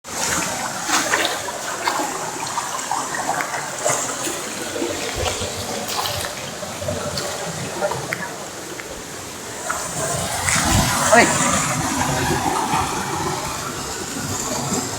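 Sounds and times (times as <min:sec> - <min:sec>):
water splashes: 0:00.1 - 0:14.9
waterfall rushing: 0:01.4 - 0:14.9.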